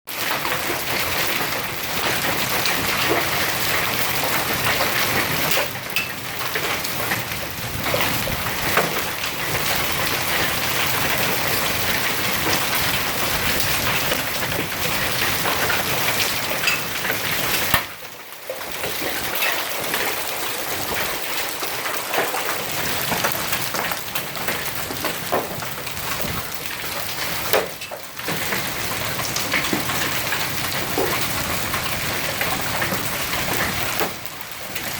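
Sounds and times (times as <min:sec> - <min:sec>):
hail and heavy rain pelting: 0:00.1 - 0:34.9.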